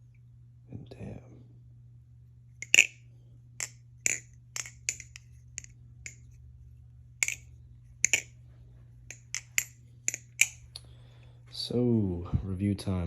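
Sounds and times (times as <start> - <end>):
butterfly knife handles clicking: 2.6 - 3.0, 3.6 - 6.4, 7.2 - 8.4, 9.1 - 10.8.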